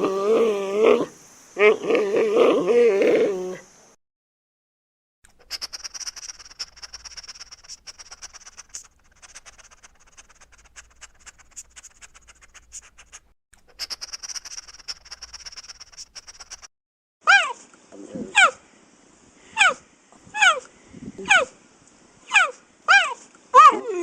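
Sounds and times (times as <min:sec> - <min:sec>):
steady high hiss: 0:00.0 - 0:04.0
crackling and scratching clicks: 0:05.5 - 0:16.7.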